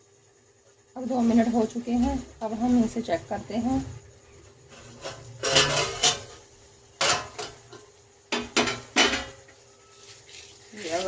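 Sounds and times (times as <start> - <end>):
spatula scraping a pan: 4.6 - 11.0.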